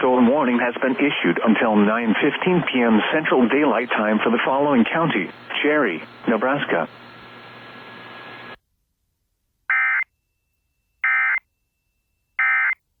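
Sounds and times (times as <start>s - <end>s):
broadcast hiss: 0.0s - 8.6s.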